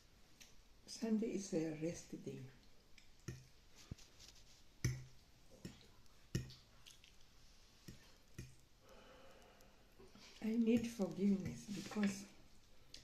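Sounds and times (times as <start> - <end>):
soft sharp clicks and taps: 2.6 - 8.7.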